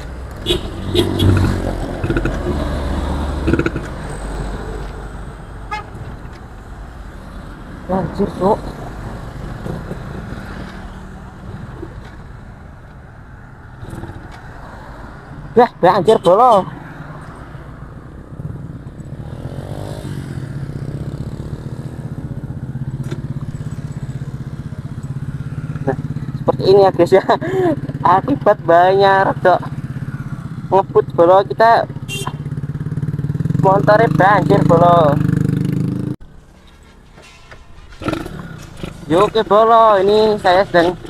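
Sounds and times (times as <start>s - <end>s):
motorcycle road rumble: 0.0s - 41.0s
vehicle horn toot: 0.4s - 1.5s, 5.6s - 6.1s, 32.0s - 32.6s
motorcycle engine running: 18.3s - 28.5s, 29.1s - 36.2s.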